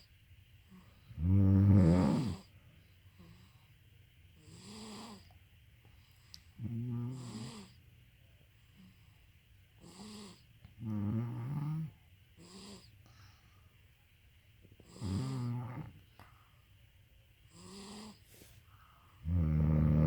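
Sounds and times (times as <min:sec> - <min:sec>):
deep loud snores: 0:01.1 - 0:02.5, 0:04.4 - 0:05.3, 0:06.6 - 0:07.8, 0:09.8 - 0:12.9, 0:14.8 - 0:16.0, 0:17.5 - 0:18.2, 0:19.2 - 0:20.0
softer higher-pitched snores: 0:01.2 - 0:02.5, 0:06.6 - 0:07.8, 0:19.2 - 0:20.0.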